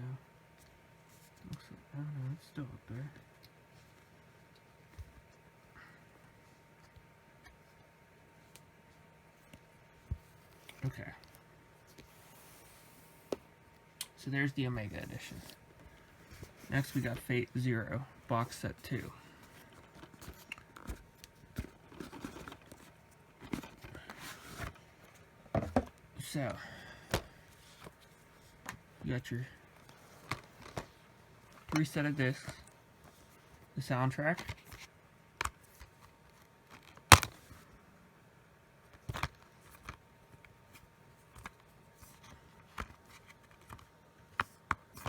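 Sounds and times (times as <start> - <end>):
plastic disc cases clicking: 29.8 - 31.0, 36.7 - 37.5, 38.9 - 40.6, 41.3 - 45.0.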